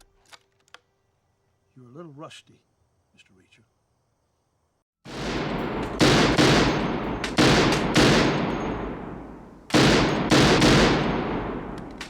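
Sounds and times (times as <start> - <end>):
echoing gunshots: 5.1 - 12.0.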